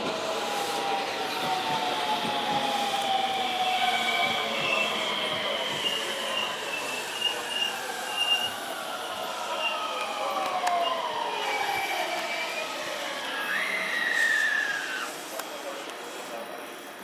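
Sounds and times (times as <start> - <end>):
electric train motor whine: 0.0 - 17.0
high brake squeals: 4.6 - 8.8, 10.8 - 15.3.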